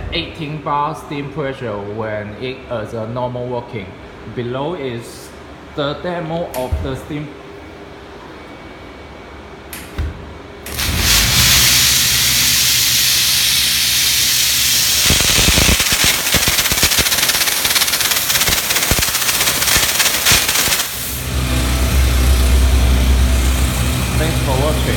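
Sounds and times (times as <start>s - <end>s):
low machine hum: 0.0s - 24.9s
steam jet hissing: 10.7s - 24.9s.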